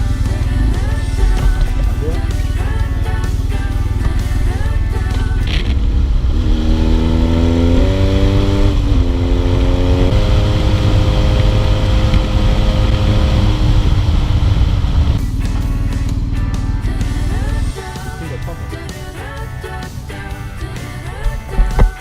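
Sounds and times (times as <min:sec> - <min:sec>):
wind and road rumble: 0:00.0 - 0:17.6.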